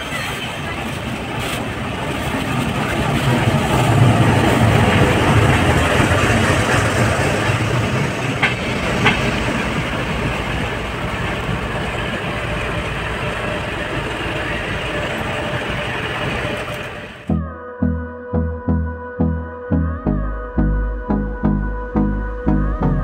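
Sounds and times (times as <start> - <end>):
train rumbling on rails: 0.0 - 17.4.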